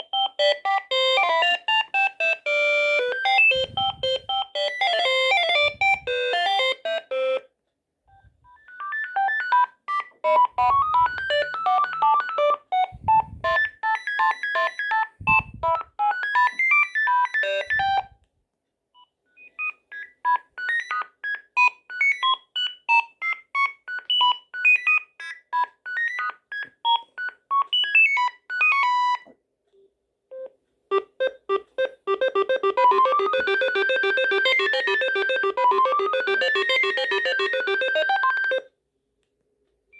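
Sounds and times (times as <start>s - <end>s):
mobile phone ringtone melodies: 0.0s - 7.4s, 8.6s - 18.1s, 30.9s - 38.7s.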